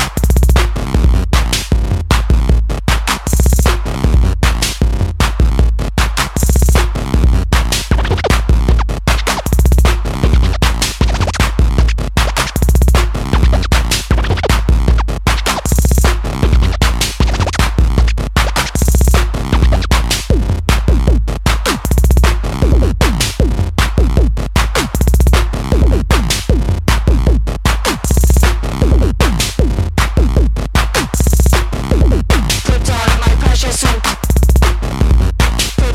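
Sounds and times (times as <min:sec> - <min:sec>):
electronic music with drum beat: 0:00.0 - 0:35.9
record scratching: 0:07.9 - 0:20.1, 0:32.3 - 0:35.9.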